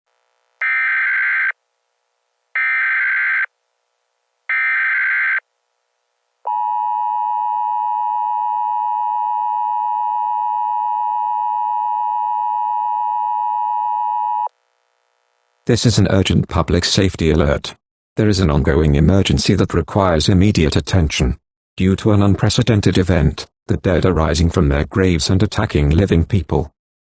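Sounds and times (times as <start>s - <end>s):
screechy digital data tones: 0.6s - 1.6s, 2.6s - 3.5s.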